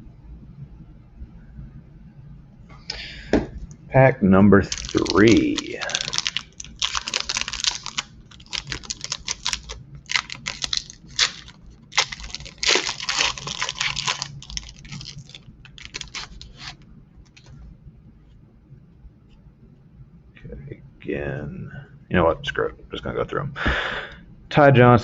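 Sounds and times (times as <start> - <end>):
card wrapper tearing and crinkling: 4.6 - 17.5.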